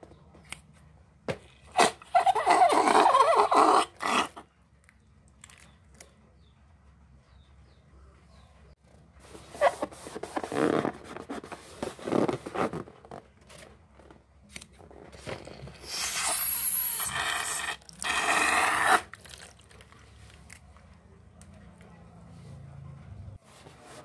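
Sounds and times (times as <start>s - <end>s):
rubber balloon squeaks: 1.7s - 4.4s, 9.5s - 13.2s, 15.8s - 19.1s
long balloon rasps: 15.8s - 19.1s.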